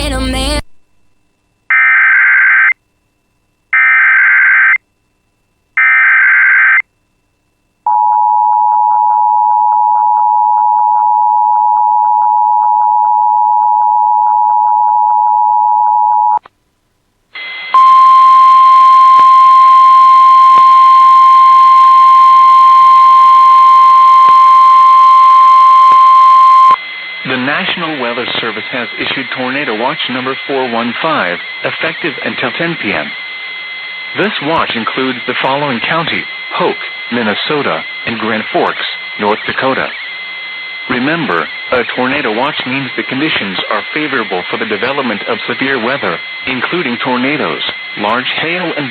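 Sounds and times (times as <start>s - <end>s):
two-tone attention signal: 17.7s - 26.8s.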